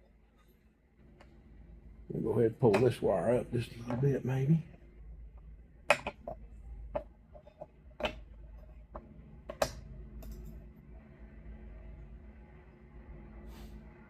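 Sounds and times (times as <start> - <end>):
small parts clicking and tapping: 5.9 - 10.6.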